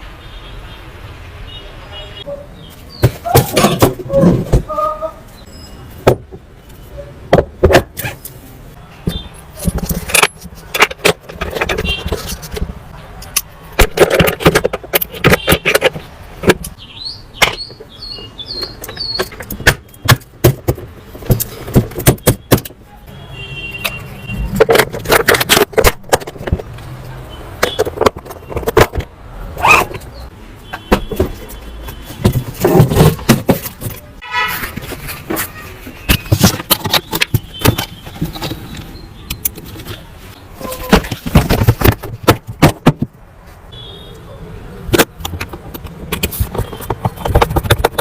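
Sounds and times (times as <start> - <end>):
hard objects clicking and rattling: 9.0 - 16.8, 18.6 - 22.9, 23.8 - 30.1, 30.7 - 43.3, 44.9 - 48.0.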